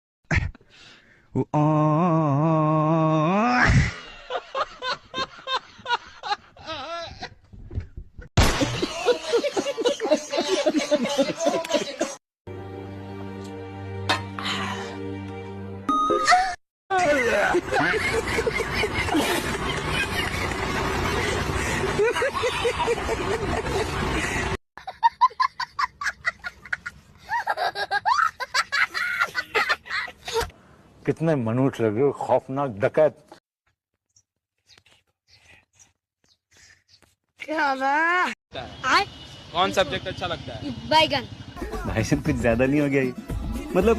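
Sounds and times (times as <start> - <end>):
bursts of laughter: 8.5 - 12.2, 16.3 - 30.3
high gliding giggling: 8.8 - 12.2, 16.3 - 30.4
music with voices: 13.1 - 15.6, 41.6 - 43.9
noisy hissy laughter clip: 17.3 - 24.5.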